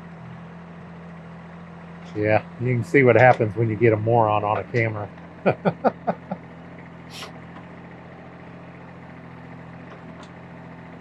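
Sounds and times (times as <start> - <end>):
diesel engine running: 0.0 - 11.0
short hiss: 7.1 - 7.3.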